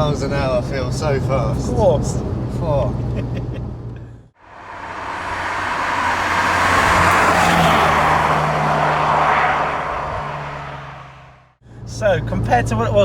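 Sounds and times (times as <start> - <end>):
wind and road noise: 0.0 - 11.9
car engine drone: 4.4 - 11.6.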